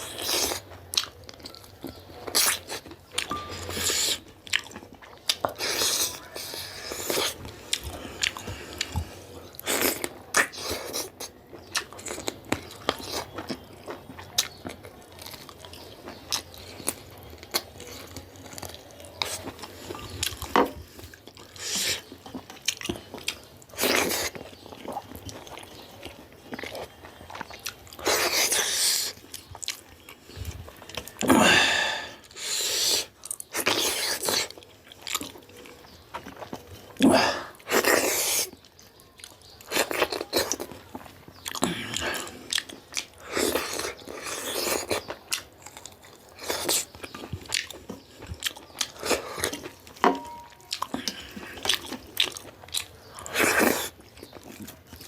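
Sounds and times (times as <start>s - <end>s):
wet chewing and lip-smacking: 0.0s - 31.3s, 32.2s - 55.0s
slurping: 37.0s - 38.6s, 50.7s - 54.1s.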